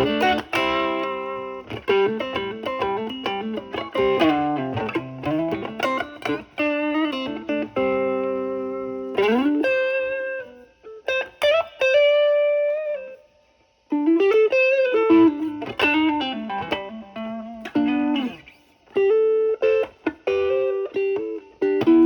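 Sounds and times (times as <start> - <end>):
overdriven electric guitar lead: 0.0 - 13.2, 13.9 - 22.0.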